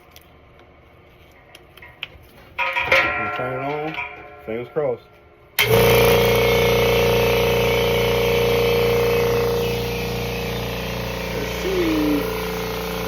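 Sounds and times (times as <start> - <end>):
air compressor running: 5.6 - 13.0.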